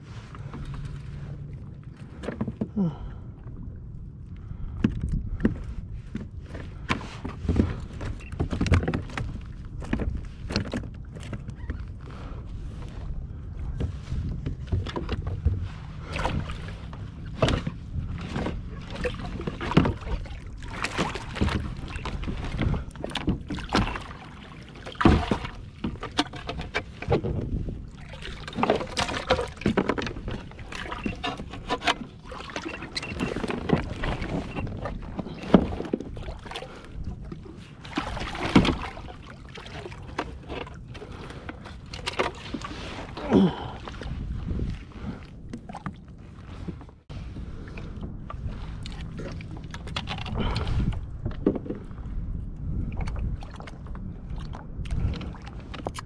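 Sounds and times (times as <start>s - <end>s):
steady low water wash: 0.0s - 8.0s, 12.0s - 29.6s, 33.8s - 56.0s
water splashing against kayak hull: 0.0s - 56.0s
sharp knocks on hull: 24.9s - 27.5s, 38.0s - 39.1s.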